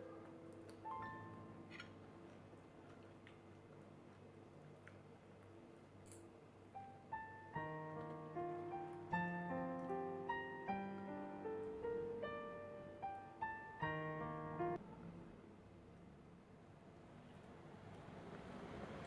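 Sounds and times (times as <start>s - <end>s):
soft piano music: 0.0s - 2.2s, 6.7s - 14.8s.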